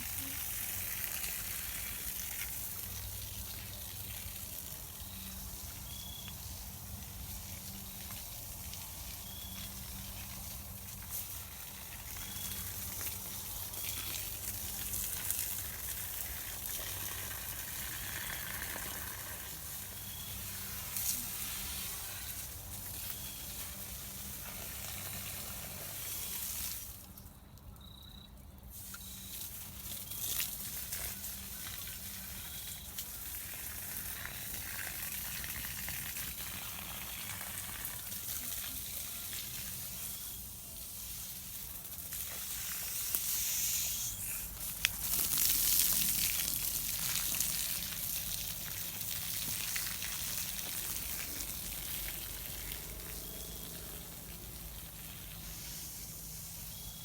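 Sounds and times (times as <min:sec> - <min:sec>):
sharp popping of frying food: 0:08.0 - 0:22.0, 0:41.3 - 0:55.0.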